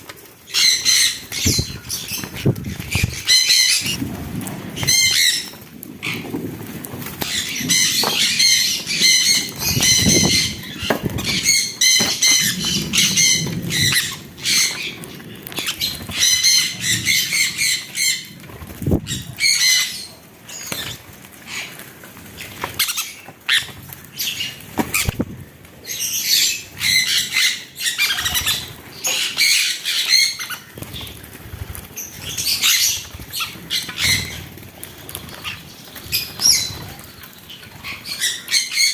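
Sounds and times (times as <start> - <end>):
birds chirping: 0.0 - 38.9.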